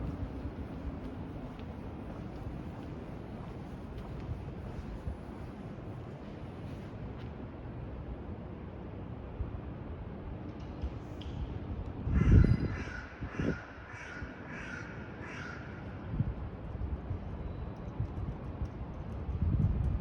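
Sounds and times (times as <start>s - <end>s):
wind buffeting microphone: 0.0s - 6.5s, 12.0s - 13.7s, 16.1s - 20.0s
crow cawing: 12.2s - 15.8s.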